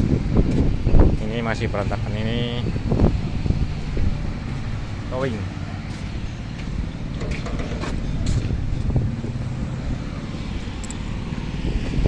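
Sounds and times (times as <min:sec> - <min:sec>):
low machinery rumble: 0:00.0 - 0:12.0
light knocks and clanks: 0:05.9 - 0:09.5.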